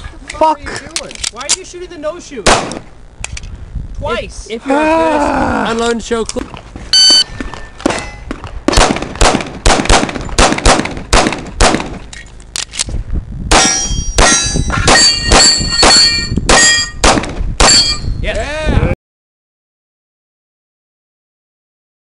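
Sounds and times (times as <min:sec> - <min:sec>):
rapid pistol fire: 0:02.4 - 0:02.9, 0:08.7 - 0:12.0, 0:13.5 - 0:17.8
bullets ringing on steel targets: 0:13.6 - 0:18.2.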